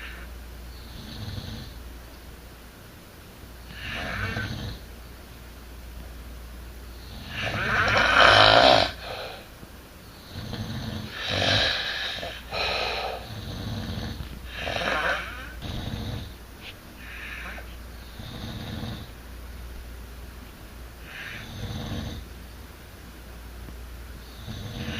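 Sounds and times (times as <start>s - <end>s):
rough snoring: 0.9s - 1.8s, 3.7s - 4.8s, 7.0s - 9.4s, 10.3s - 16.4s, 17.0s - 19.1s, 21.0s - 22.2s, 24.3s - 24.9s.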